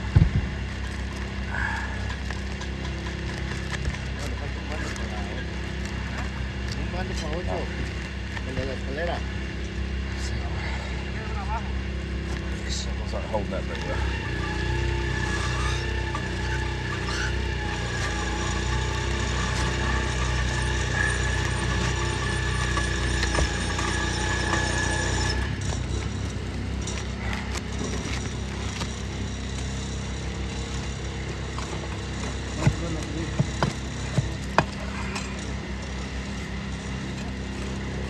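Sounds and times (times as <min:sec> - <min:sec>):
steady motor hum: 0:00.0 - 0:38.0
scraping and clicking on roof shingles: 0:14.3 - 0:37.5.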